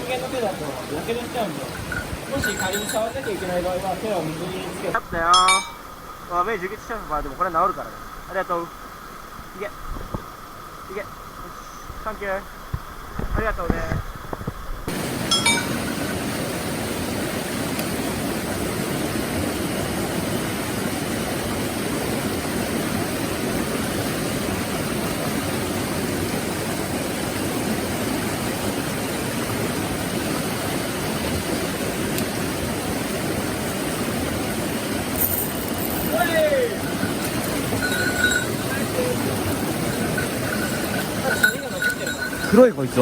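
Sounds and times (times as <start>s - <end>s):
stream water rushing: 0.0s - 43.0s.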